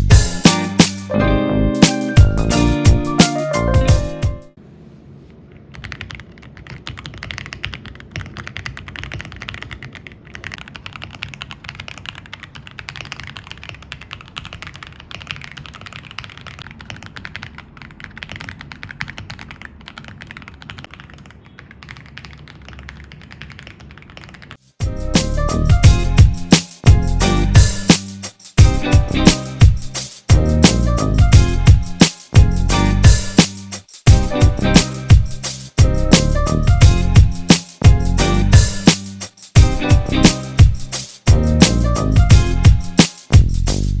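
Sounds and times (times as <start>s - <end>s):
fast typing on mechanical keyboard: 5.7s - 24.6s.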